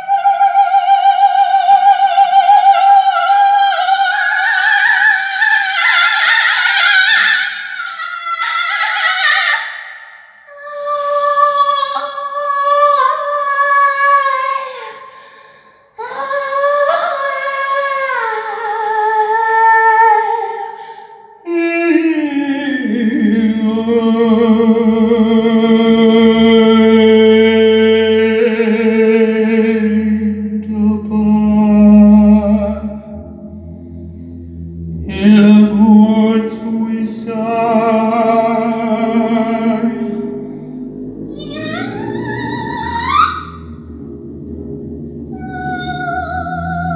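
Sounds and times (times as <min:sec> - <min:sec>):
woman singing high gliding phrases: 0:00.0 - 0:15.2, 0:16.0 - 0:20.8, 0:21.4 - 0:46.9
man chanting low: 0:21.5 - 0:46.9.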